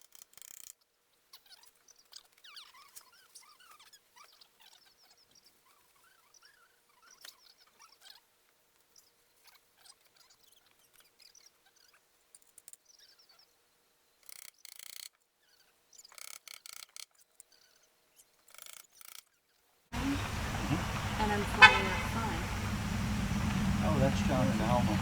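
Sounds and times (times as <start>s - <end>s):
rustling bursts: 20.0s - 25.0s
small birds chirping: 20.0s - 25.0s.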